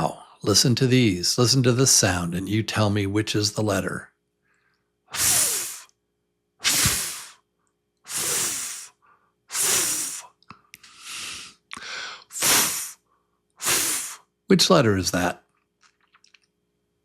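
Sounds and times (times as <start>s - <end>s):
man blowing hissing breaths: 4.6s - 5.9s, 6.6s - 7.4s, 8.1s - 14.3s.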